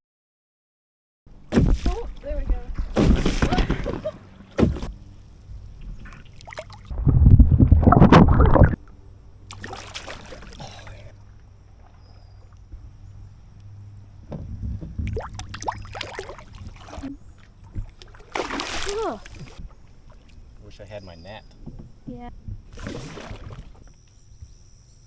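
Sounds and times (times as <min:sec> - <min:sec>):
water against canoe hull: 0:01.3 - 0:24.6
paddle strokes: 0:01.5 - 0:24.0
loud low rumble: 0:06.8 - 0:09.4.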